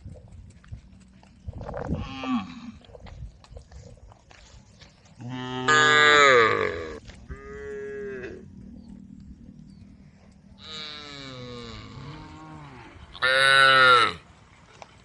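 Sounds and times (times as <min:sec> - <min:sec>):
cows mooing: 0:05.2 - 0:08.6, 0:10.6 - 0:14.2.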